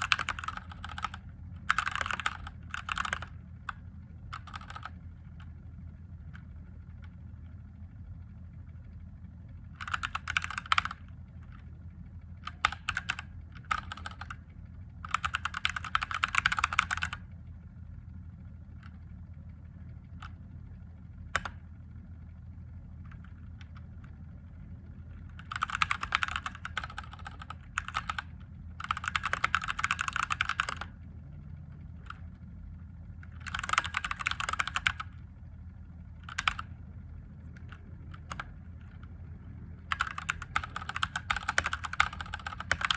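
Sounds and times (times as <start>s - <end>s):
mechanical keyboard typing: 0.0s - 5.6s, 9.6s - 11.7s, 12.3s - 17.3s, 21.2s - 21.7s, 25.1s - 31.0s, 32.0s - 32.3s, 33.2s - 35.3s, 36.2s - 36.8s, 37.5s - 39.2s, 39.8s - 42.9s.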